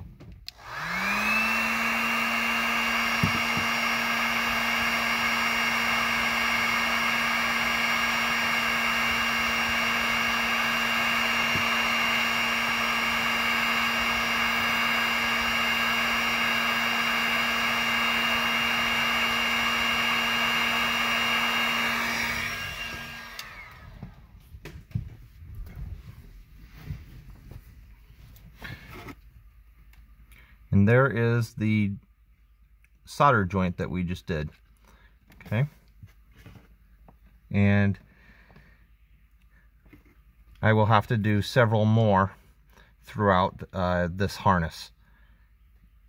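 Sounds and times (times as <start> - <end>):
heat gun fan humming and whining: 0.4 - 27.6.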